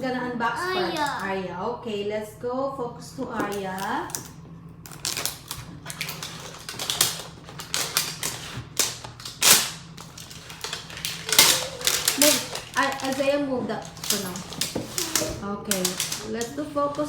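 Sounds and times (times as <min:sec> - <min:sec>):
plastic packaging crinkling: 0:03.6 - 0:17.0.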